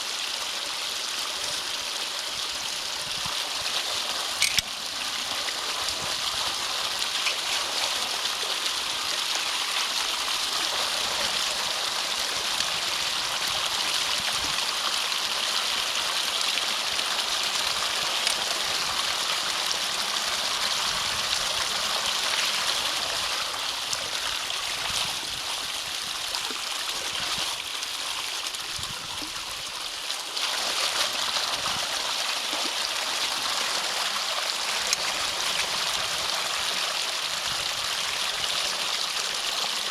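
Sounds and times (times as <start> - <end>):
water gurgling through culvert: 0.0 - 39.9.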